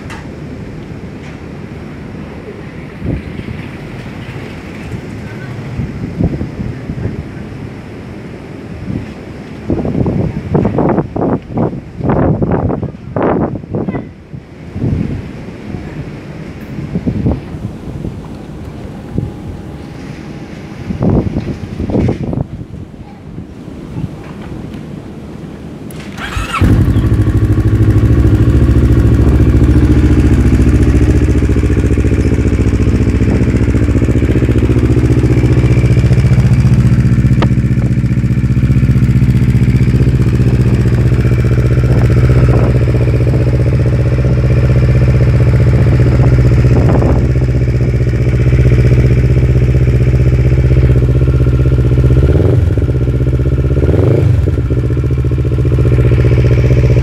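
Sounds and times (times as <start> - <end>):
motorcycle engine starting and idling: 25.8 - 57.0.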